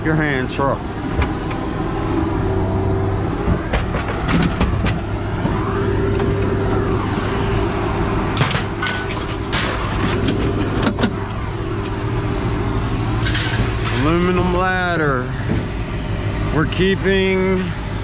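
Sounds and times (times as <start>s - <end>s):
engine running: 0.0s - 18.0s
scrap metal clanking: 13.2s - 14.2s.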